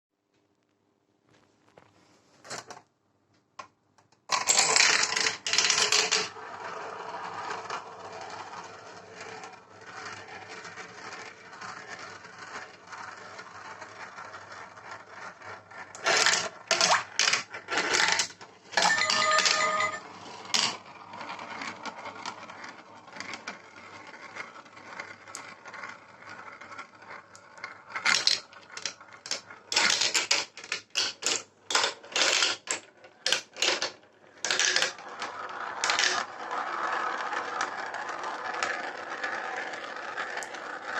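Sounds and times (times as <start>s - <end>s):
marbles rolling on plastic track: 4.3s - 40.9s
marbles clacking: 18.1s - 20.0s, 34.4s - 40.8s
short electronic tone: 18.8s - 20.1s.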